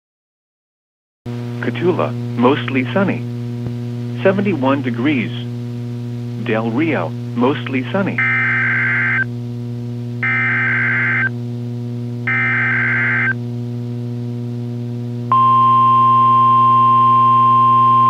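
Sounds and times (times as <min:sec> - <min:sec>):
low hum: 0:01.3 - 0:18.0
steady alarm tone: 0:08.1 - 0:09.3, 0:10.2 - 0:11.3, 0:12.2 - 0:13.4.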